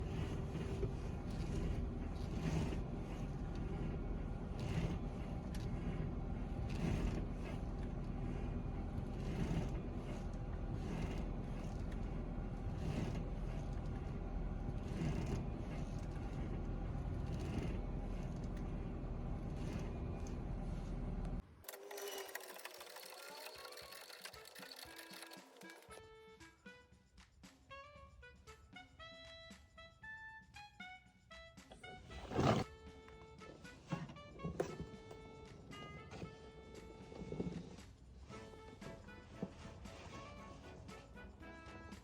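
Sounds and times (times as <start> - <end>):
steady low hum: 0.0 - 21.4
steering wheel creaking: 0.0 - 26.0, 31.7 - 42.0.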